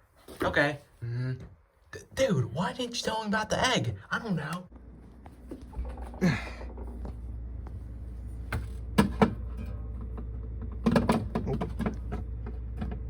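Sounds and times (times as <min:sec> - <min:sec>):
steady low hum: 0:00.8 - 0:13.0
objects knocking and clicking: 0:08.5 - 0:13.0.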